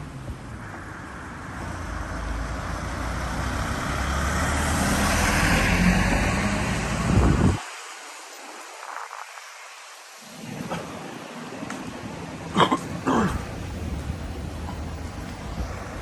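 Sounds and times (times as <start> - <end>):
vehicle approaching: 0.0 - 7.6.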